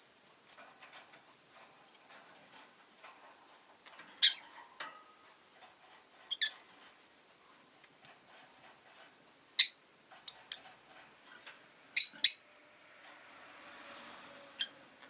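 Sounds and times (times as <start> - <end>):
rustling: 0.0 - 12.0
lovebird chirping: 4.2 - 4.4, 6.3 - 6.6, 9.6 - 10.6, 11.9 - 12.5.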